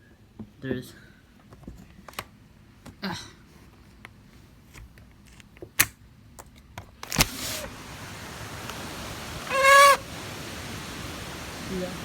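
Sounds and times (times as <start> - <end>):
storm wind: 7.4 - 12.0
brief high squeal: 9.5 - 10.0.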